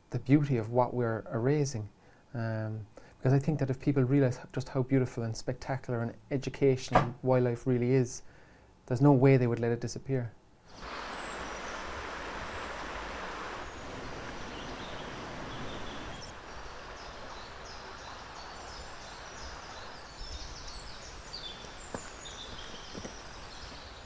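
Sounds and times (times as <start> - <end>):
outdoor noise haze: 10.5 - 24.0
birds chirping: 10.7 - 24.0.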